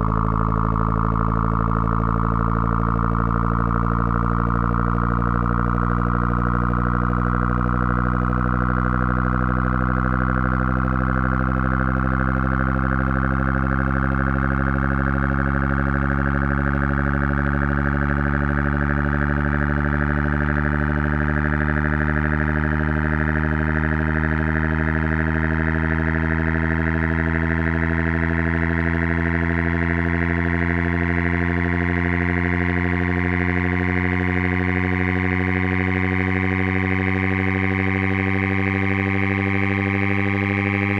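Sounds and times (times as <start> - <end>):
buzzy test tone rising in pitch: 0.0 - 40.9.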